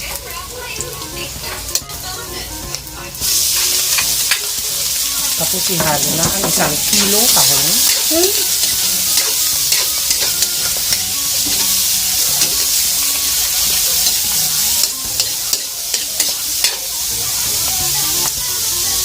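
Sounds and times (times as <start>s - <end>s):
food sizzling in a pan: 0.0s - 19.0s
utensil clicking against pan: 5.5s - 16.9s.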